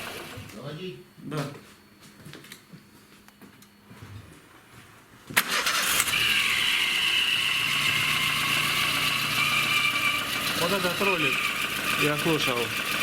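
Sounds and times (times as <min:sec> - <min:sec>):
car engine starting: 0:05.4 - 0:13.0
high-pitched belt squeal: 0:06.1 - 0:12.8.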